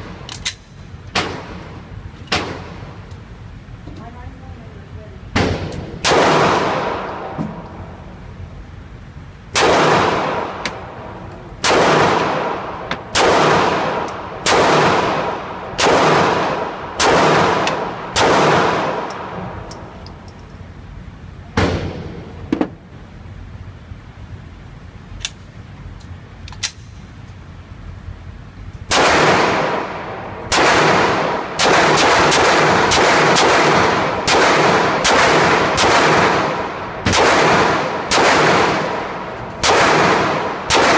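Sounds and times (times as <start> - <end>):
pistol shots with echo: 5.3 - 7.3, 9.6 - 10.8, 11.6 - 19.5, 28.9 - 40.9.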